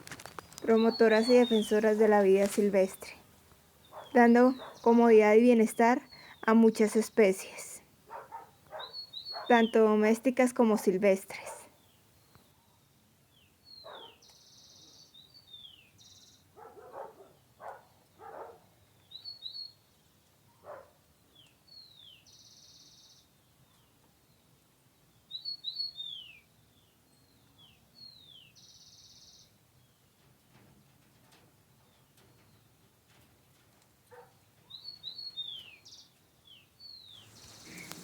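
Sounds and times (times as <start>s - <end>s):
bird chirps: 0.2s - 3.1s, 3.8s - 5.2s, 5.8s - 10.2s, 36.9s - 38.0s
short low bird calls: 37.2s - 38.0s
high buzzy bird trills: 37.3s - 38.0s.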